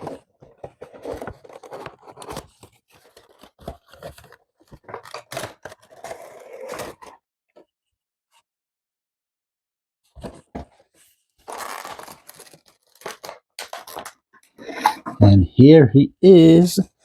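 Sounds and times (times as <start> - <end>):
packaging crackling and clicking: 11.4 - 14.2.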